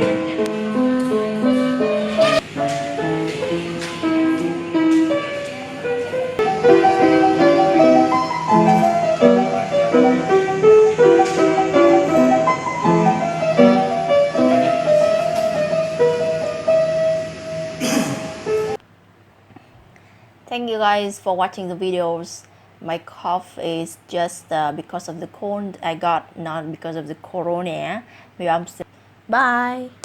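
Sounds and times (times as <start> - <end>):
piano melody over chords: 0.0 - 18.8.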